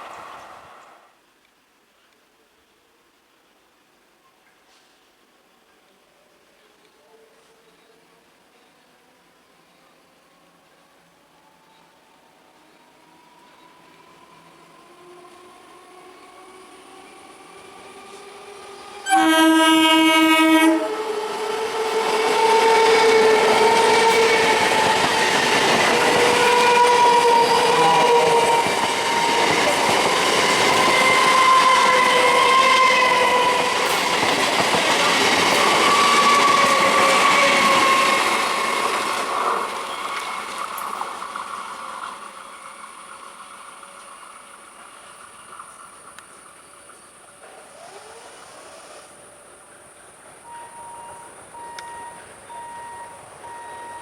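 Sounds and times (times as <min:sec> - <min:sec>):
train wheels on rails: 0:12.5 - 0:54.0
train horn blast: 0:19.0 - 0:34.2.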